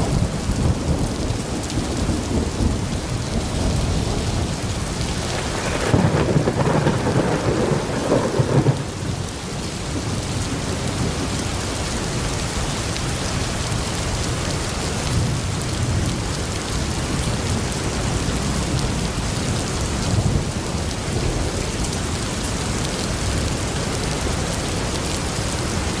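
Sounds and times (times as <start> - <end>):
thunder rumbling: 0.0 - 11.5
heavy rain falling: 0.0 - 26.0.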